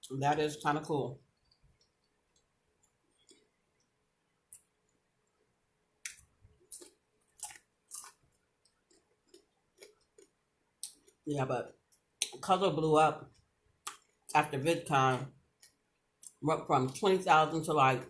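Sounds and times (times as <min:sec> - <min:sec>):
chewing with mouth smacks: 0:01.4 - 0:03.9, 0:06.0 - 0:11.2.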